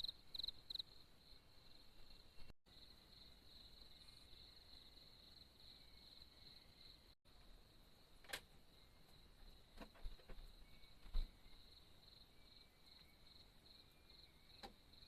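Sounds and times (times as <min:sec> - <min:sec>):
insects chirring: 0:00.0 - 0:08.1.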